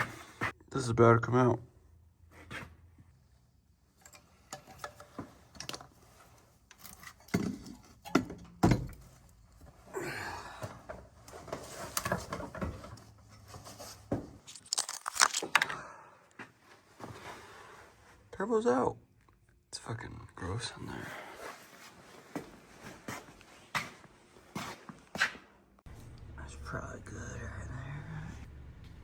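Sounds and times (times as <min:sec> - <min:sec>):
metal clanks and knocks: 0:07.0 - 0:09.2.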